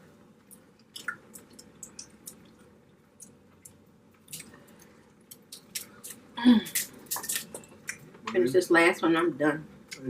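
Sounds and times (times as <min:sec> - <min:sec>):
soft wet chewing: 0:00.4 - 0:08.2.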